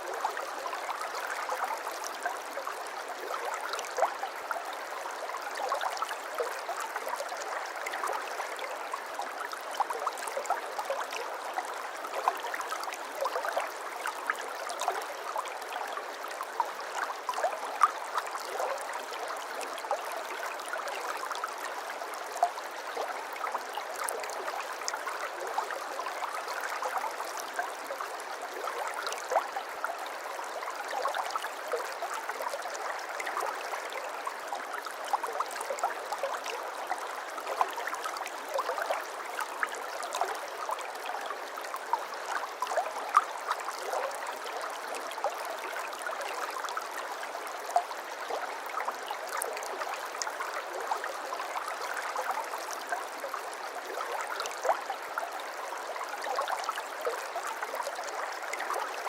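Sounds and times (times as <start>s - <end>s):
stream babbling: 0.0s - 59.0s.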